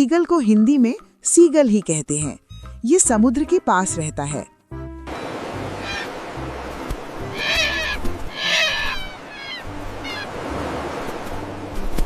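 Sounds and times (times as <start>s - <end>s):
seagulls calling: 5.1s - 10.4s
steady rushing background: 5.1s - 12.0s.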